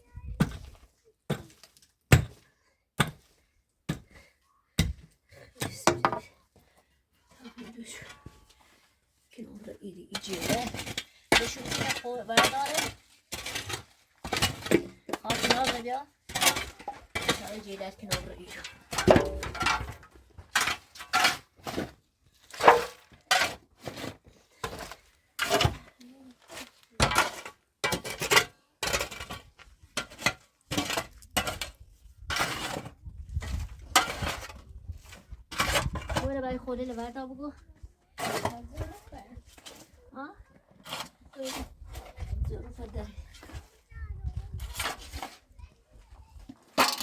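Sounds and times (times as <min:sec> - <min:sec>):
hand tool striking hard material: 0:01.3 - 0:02.4, 0:10.1 - 0:21.9.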